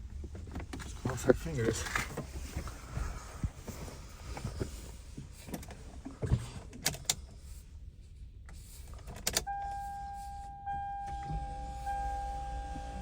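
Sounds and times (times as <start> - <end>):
clicks and rattles in car cabin: 0.0 - 7.5, 8.4 - 9.6.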